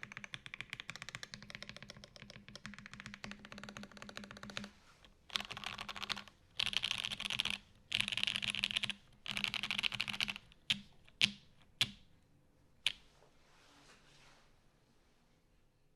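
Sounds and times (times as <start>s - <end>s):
fast typing on mechanical keyboard: 0.0s - 4.7s, 5.3s - 12.0s.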